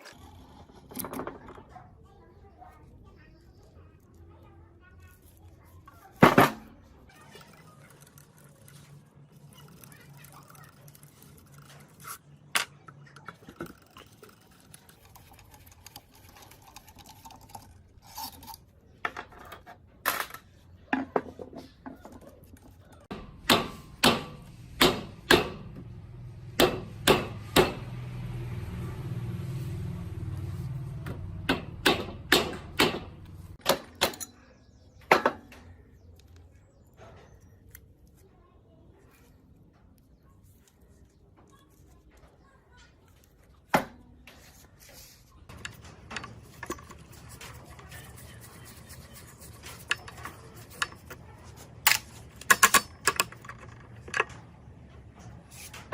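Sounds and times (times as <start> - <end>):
metal parts knocking and clinking: 51.8 - 54.5.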